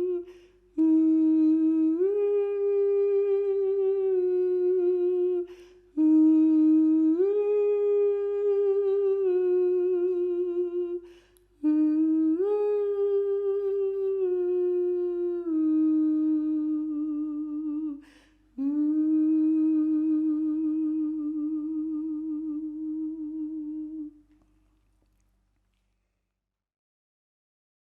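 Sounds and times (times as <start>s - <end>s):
person humming long held notes: 0.0s - 24.3s
in-breaths: 0.2s - 0.7s, 5.4s - 6.0s, 11.0s - 11.6s, 18.0s - 18.6s.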